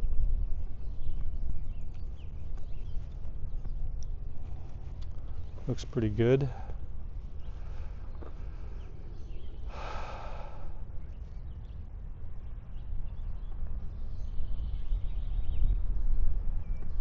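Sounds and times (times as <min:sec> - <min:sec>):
low outdoor rumble: 0:00.0 - 0:17.0
short breathy hiss: 0:09.7 - 0:10.7.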